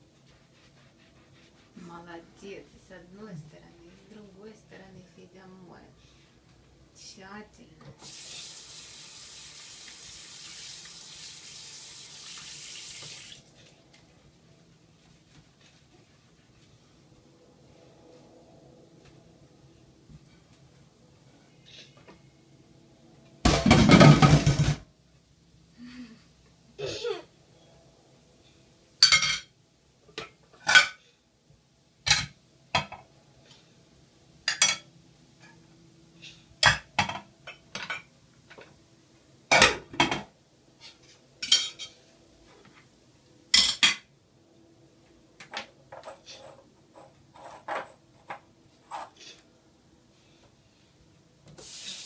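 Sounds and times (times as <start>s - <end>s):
dishes and cutlery clinking: 29.0s - 29.6s, 34.5s - 35.6s, 40.9s - 42.0s, 43.5s - 44.1s.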